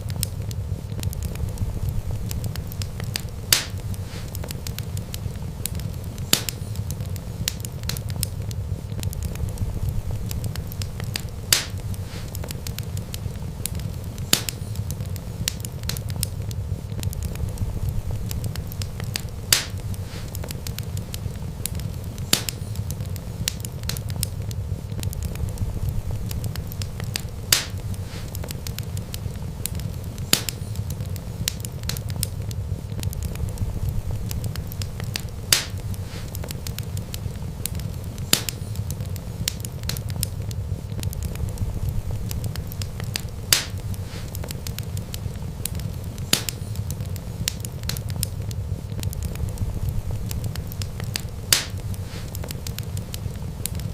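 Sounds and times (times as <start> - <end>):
low rumble of flames: 0.0 - 53.9
wood crackling and popping: 0.0 - 53.9.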